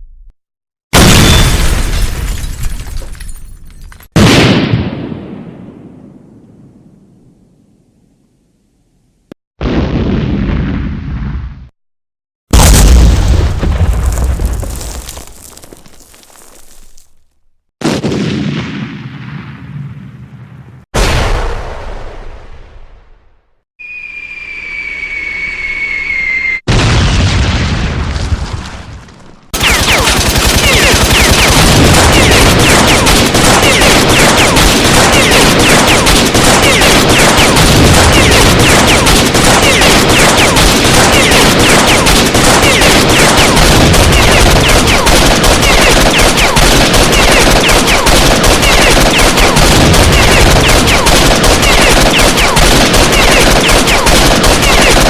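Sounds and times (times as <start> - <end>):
explosion boom: 12.5 - 15.4, 26.7 - 29.0
falling whistle: 23.8 - 26.7
heavy automatic gunfire: 29.6 - 55.0.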